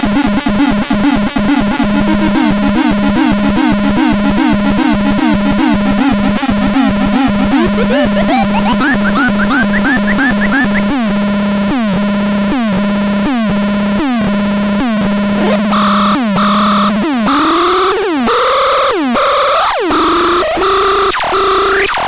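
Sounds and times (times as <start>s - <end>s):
falling electronic sweeps: 7.6s - 10.8s
high pulsing tone: 7.6s - 10.8s
rising electronic chirps: 7.6s - 10.8s
slow rising electronic glide: 7.6s - 10.8s.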